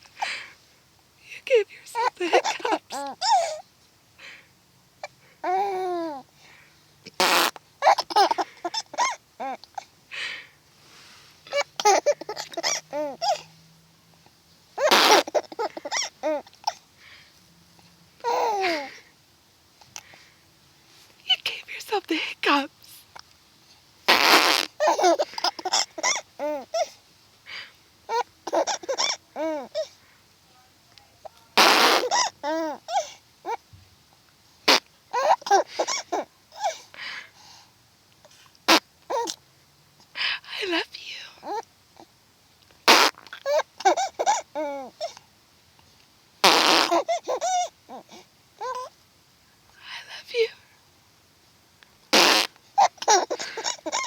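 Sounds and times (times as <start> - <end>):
high-pitched baby vocal sounds: 1.3 - 3.6, 11.5 - 13.5, 14.8 - 16.8, 18.2 - 19.0, 24.1 - 27.0, 28.1 - 29.9, 31.2 - 33.6, 39.1 - 39.4, 40.6 - 41.6, 42.9 - 45.2, 46.4 - 48.9, 52.2 - 54.0
infant squealing and gasping: 1.9 - 3.6, 5.4 - 6.2, 7.2 - 9.9, 11.5 - 13.5, 14.8 - 16.8, 18.2 - 19.0, 24.1 - 27.0, 28.1 - 29.9, 31.6 - 33.6, 34.7 - 36.8, 39.1 - 39.4, 43.4 - 45.2, 46.4 - 48.9, 52.8 - 54.0
baby hiccuping: 2.0 - 3.6, 7.1 - 9.6, 11.5 - 13.5, 14.8 - 16.8, 18.2 - 18.9, 24.1 - 26.9, 28.1 - 29.9, 31.6 - 33.6, 34.7 - 36.8, 38.7 - 39.4, 42.9 - 45.2, 46.4 - 48.9, 52.2 - 54.0.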